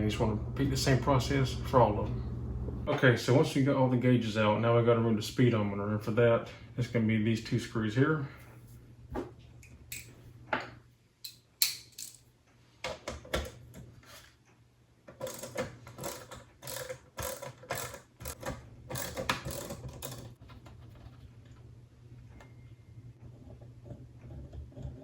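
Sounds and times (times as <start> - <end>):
rapid ratcheting clicks: 15.2 - 20.4.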